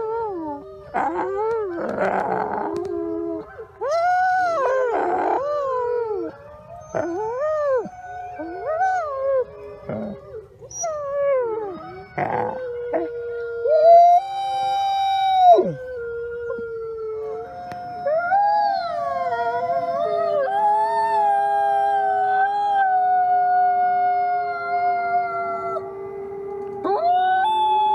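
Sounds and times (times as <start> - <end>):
wolves howling in chorus: 0.0 - 27.9.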